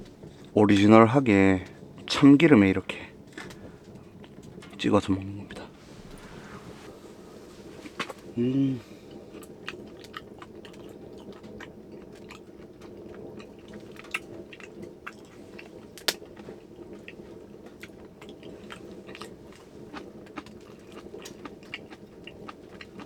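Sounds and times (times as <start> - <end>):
moist chewing with crisp clicks: 2.9 - 4.9, 9.0 - 23.0.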